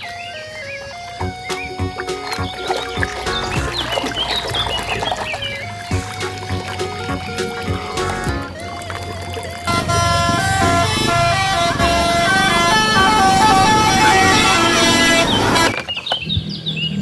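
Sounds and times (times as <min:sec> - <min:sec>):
multi-tone bus horn tune: 0:09.9 - 0:14.9.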